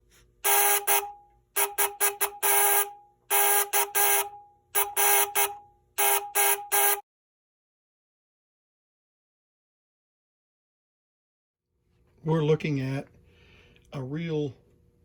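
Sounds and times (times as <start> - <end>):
morse code buzzer beeps: 0.4 - 7.0.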